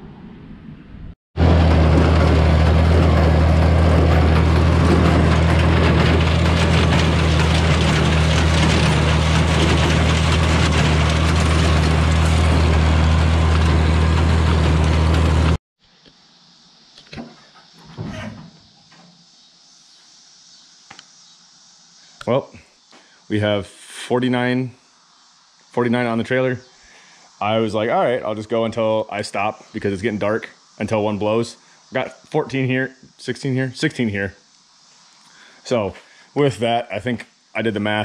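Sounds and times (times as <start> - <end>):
hay baler working: 1.4 - 15.6
tractor engine running: 1.4 - 15.6.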